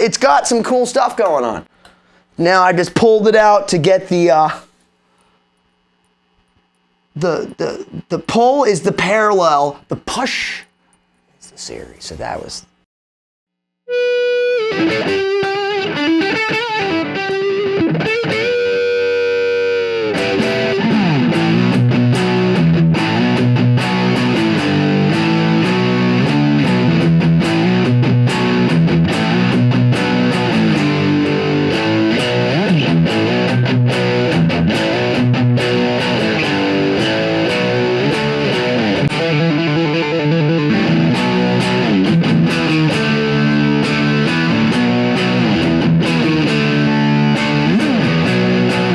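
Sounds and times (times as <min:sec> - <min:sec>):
distorted electric guitar riff: 0:13.9 - 0:48.9.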